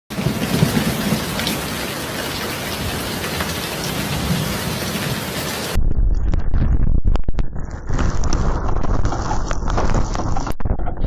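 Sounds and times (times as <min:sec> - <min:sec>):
heavy rain hissing: 0:00.1 - 0:05.8.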